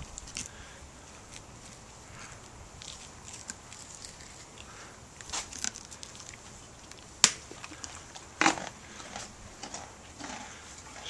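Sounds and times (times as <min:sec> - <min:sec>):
horse crunching carrot: 0:00.0 - 0:11.0
carrot snapping: 0:02.8 - 0:08.7.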